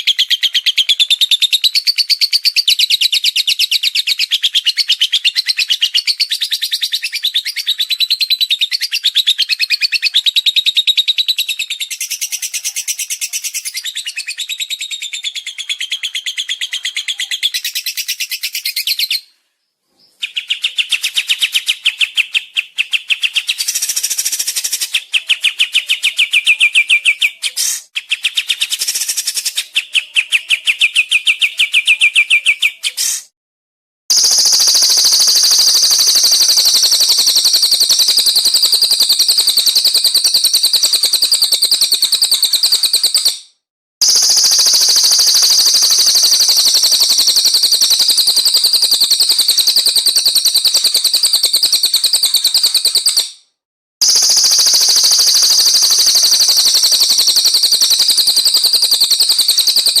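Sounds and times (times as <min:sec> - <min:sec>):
lower bird trill: 0:34.1 - 0:43.3, 0:44.0 - 0:53.2, 0:54.0 - 1:00.0
songbird high fast trill: 0:34.1 - 0:43.3, 0:44.0 - 0:53.3, 0:54.0 - 1:00.0.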